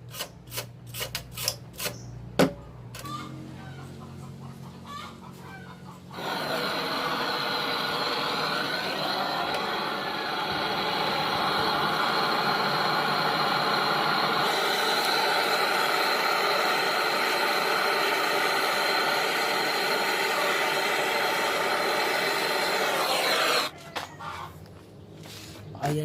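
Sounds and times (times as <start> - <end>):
electric motor whirring: 6.2 - 23.7.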